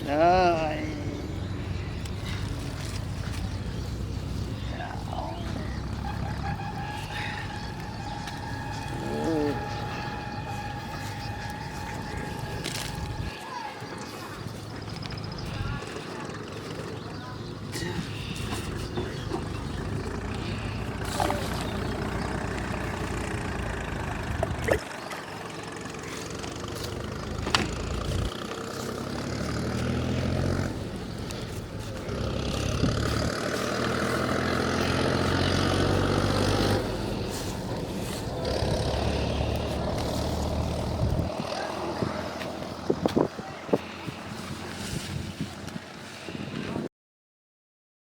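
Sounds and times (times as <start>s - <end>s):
motor running: 5.8s - 13.3s.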